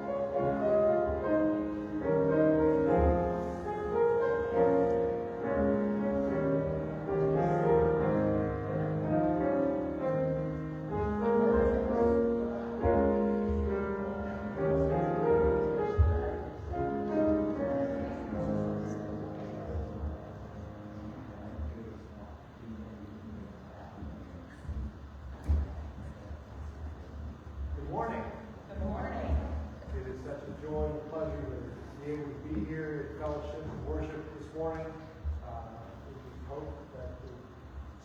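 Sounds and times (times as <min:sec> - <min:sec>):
slow piano music: 0:00.0 - 0:26.2.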